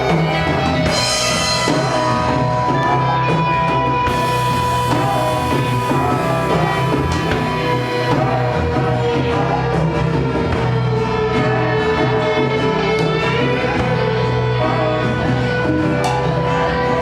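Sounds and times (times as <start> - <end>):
long held lead guitar note: 0.0 - 9.6
rock band playing live: 0.0 - 17.0.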